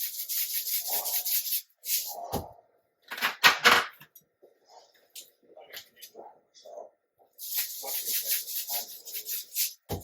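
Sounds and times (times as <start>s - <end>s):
seasoning shaker rasping: 0.0s - 2.2s, 7.4s - 10.0s.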